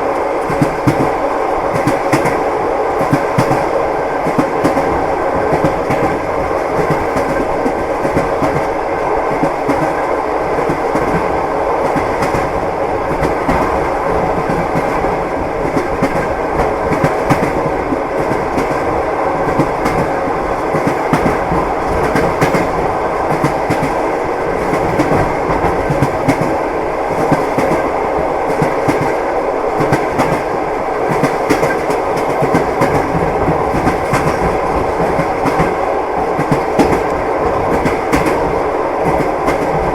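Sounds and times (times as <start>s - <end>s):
train wheels clattering over rail joints: 31.1s - 39.9s.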